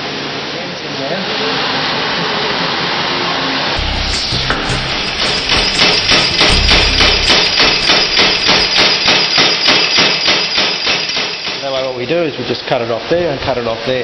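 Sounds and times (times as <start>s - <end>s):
power hammer pounding metal: 3.8s - 11.6s.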